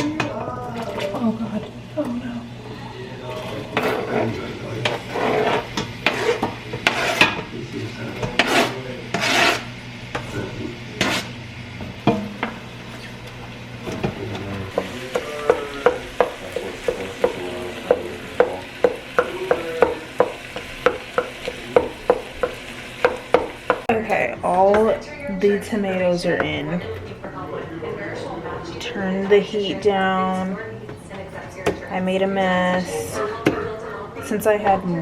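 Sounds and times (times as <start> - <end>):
light sizzle: 0.0 - 27.3
spoon knocking against pot: 14.7 - 23.9.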